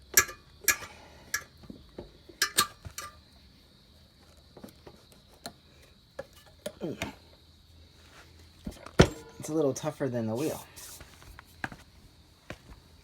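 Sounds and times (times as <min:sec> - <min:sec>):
metal clinks and taps: 0:02.4 - 0:03.2.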